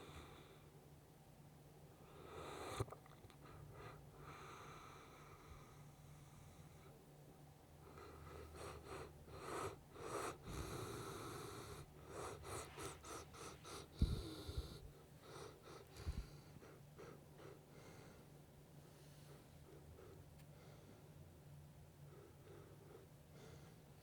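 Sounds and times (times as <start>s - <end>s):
dog snoring and snorting: 2.0s - 6.9s, 7.8s - 18.2s.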